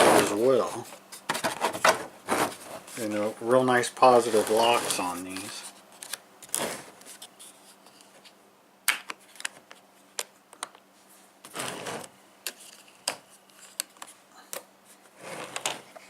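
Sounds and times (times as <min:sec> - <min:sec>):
handling rustle: 0:04.0 - 0:08.4.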